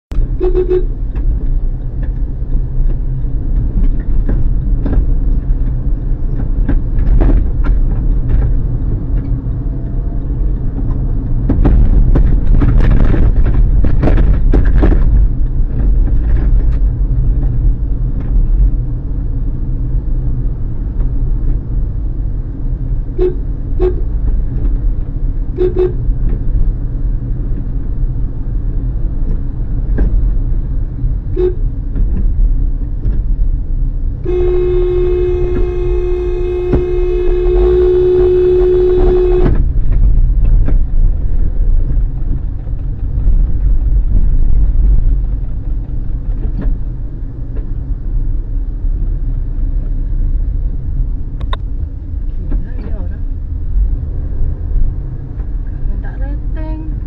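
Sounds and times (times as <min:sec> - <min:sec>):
car driving rumble: 0:00.1 - 0:57.0
car horn toots: 0:00.2 - 0:01.0, 0:23.2 - 0:24.1, 0:25.6 - 0:26.1, 0:31.3 - 0:31.7, 0:34.2 - 0:39.7.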